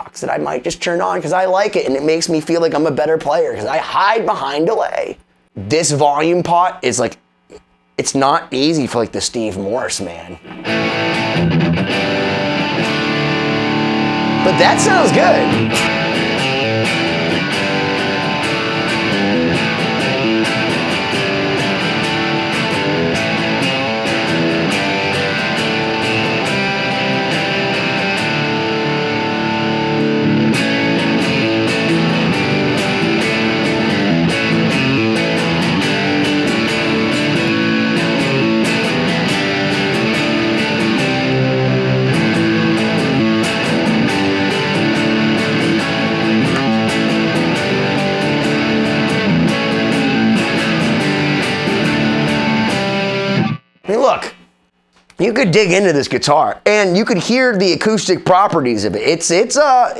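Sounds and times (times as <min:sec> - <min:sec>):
distorted electric guitar: 0:10.4 - 0:53.9.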